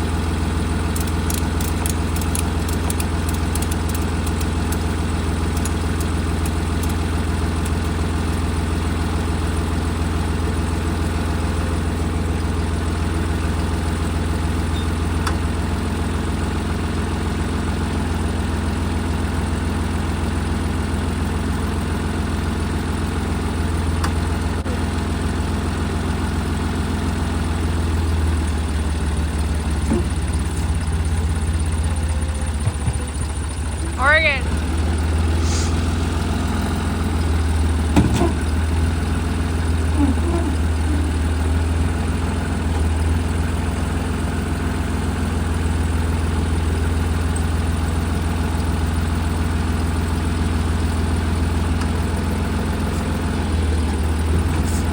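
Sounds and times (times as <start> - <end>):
tractor engine idling: 0.0 - 54.9
faint clicks and clanks: 1.0 - 4.9.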